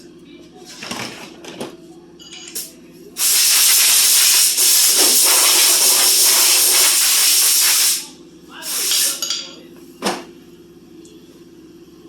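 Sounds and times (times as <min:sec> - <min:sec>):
compressed air hissing: 0:03.2 - 0:09.2.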